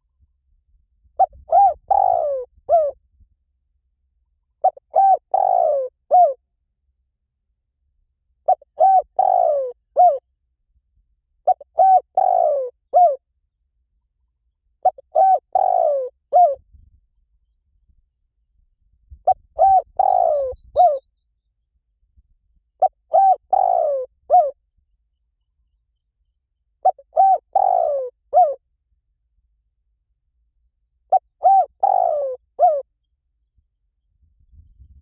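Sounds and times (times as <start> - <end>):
dove cooing: 1.2 - 3.0, 4.6 - 6.4, 8.4 - 10.2, 11.4 - 13.2, 14.8 - 16.6, 19.2 - 21.1, 22.8 - 24.6, 26.8 - 28.6, 31.1 - 32.9.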